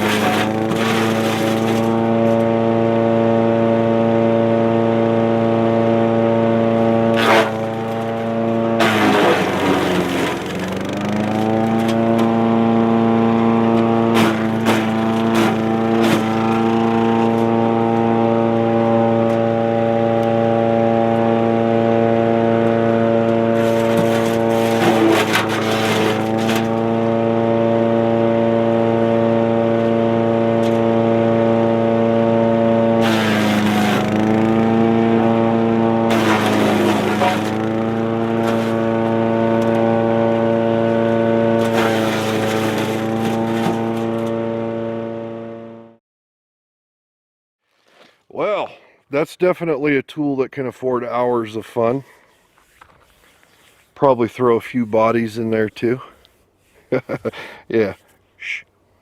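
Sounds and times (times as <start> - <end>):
branches crunching in chipper: 0.0 - 2.6, 6.6 - 44.4
wood chipper engine running: 0.0 - 46.0.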